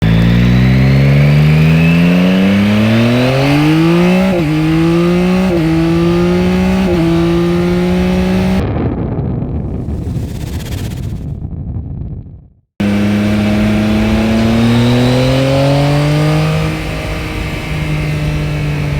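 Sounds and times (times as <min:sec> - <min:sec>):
motorcycle engine revving: 0:00.0 - 0:08.6, 0:12.8 - 0:18.9
rough rushing noise: 0:00.0 - 0:08.6, 0:09.6 - 0:11.6, 0:12.8 - 0:18.9.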